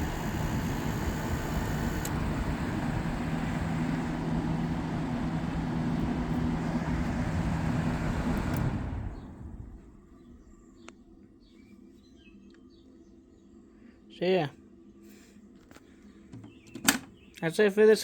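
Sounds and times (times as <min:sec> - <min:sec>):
fan air rushing: 0:00.0 - 0:10.6
compressor low hum: 0:00.0 - 0:11.1.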